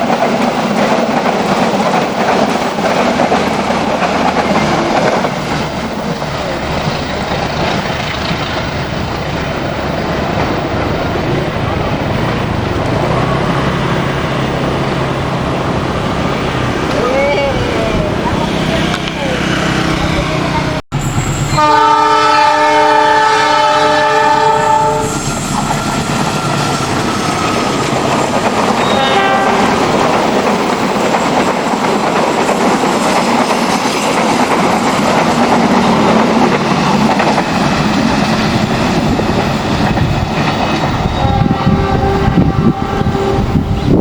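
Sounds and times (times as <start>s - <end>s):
train rumble and wheel clatter: 0.0s - 44.0s
locomotive air horn blast: 21.2s - 27.9s, 28.8s - 30.0s, 41.2s - 44.0s.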